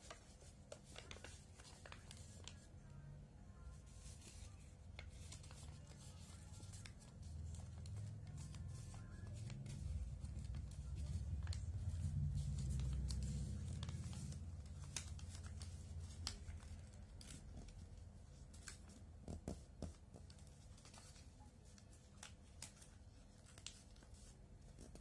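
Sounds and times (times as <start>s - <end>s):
paper rustling and creasing: 0.0s - 2.8s, 3.7s - 25.0s
low handling rumble: 9.3s - 15.6s.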